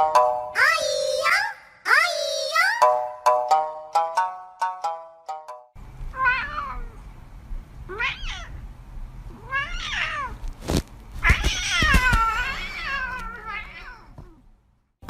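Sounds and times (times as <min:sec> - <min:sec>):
cat meowing: 0:06.1 - 0:07.0, 0:07.9 - 0:08.6, 0:09.3 - 0:10.4, 0:11.2 - 0:14.4.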